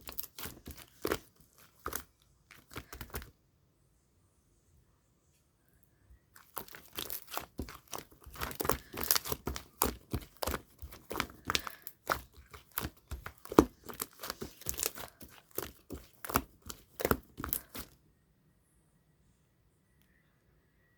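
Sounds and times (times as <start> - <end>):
slime clicking and popping: 6.4 - 17.9.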